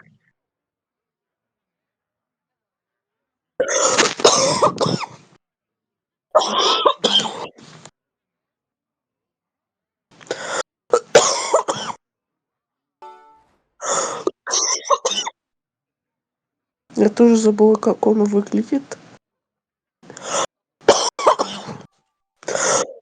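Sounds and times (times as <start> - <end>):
harsh chesty coughing: 3.6 - 5.3, 6.4 - 7.6, 10.9 - 12.0, 14.2 - 15.4, 20.8 - 23.0
faint tone: 13.0 - 13.7.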